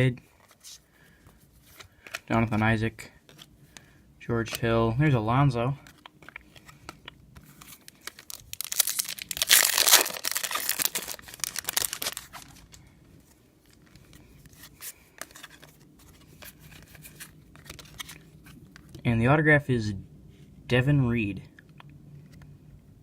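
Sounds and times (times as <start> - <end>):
cards ticking: 5.8 - 12.7
wrapper rustling: 6.0 - 12.9
plastic wrapper ripping: 7.5 - 12.8.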